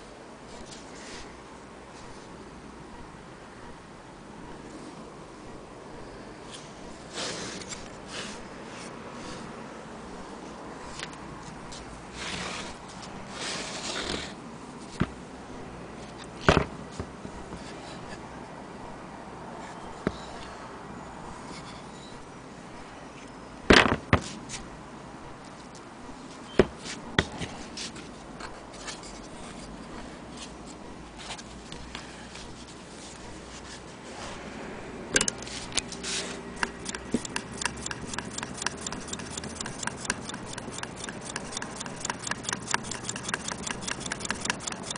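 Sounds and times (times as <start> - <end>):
fast even mechanism ticking: 36.6 - 44.9.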